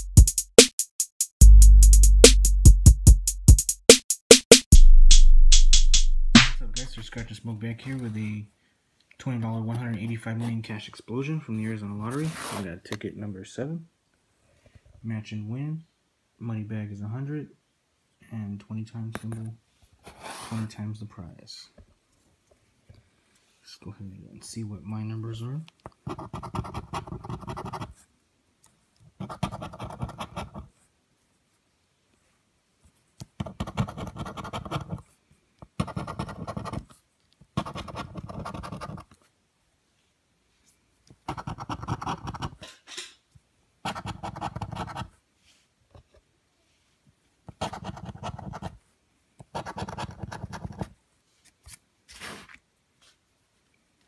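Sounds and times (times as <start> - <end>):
scratching lottery ticket coating: 37.6 - 39.1.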